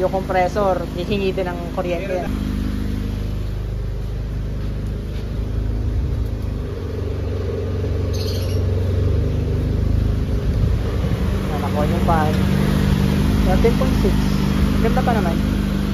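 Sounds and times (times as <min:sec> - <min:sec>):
blower fan running: 0:00.0 - 0:15.9
car engine idling: 0:00.0 - 0:15.9
bird chirp: 0:08.0 - 0:08.9.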